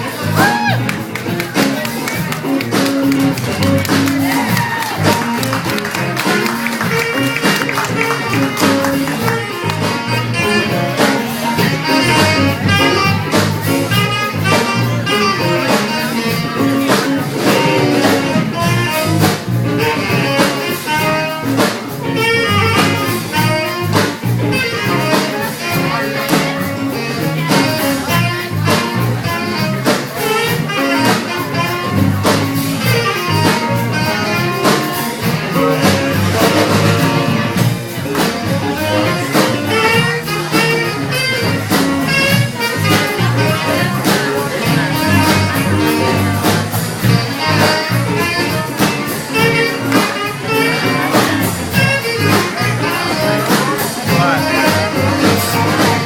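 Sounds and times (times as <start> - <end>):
drums keeping a steady beat: 0.0 - 56.0
guitar: 0.0 - 56.0
saxophone melody: 0.0 - 56.0.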